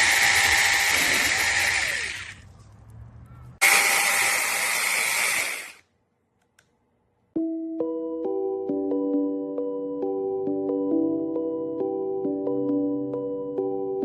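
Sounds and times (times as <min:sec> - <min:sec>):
chainsaw motor running: 0:00.0 - 0:02.4, 0:03.6 - 0:05.8
background music: 0:07.4 - 0:14.0.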